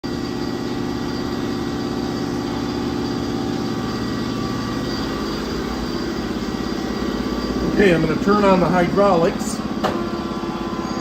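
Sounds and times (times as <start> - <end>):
machine humming with flutter: 0.0 - 11.0
faint high whine: 0.1 - 11.0.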